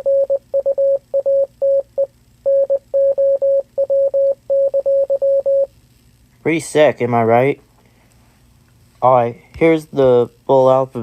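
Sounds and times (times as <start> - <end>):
morse code beeps: 0.0 - 5.7.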